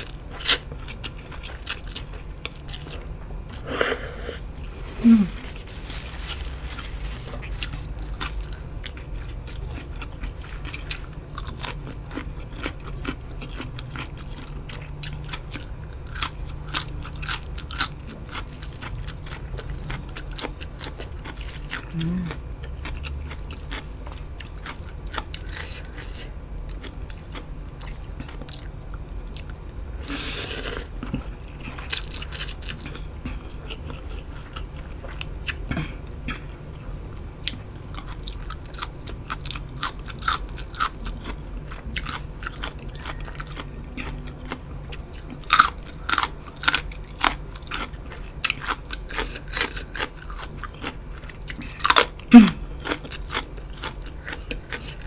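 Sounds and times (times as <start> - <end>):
chewing crunchy food: 0.0 - 55.0.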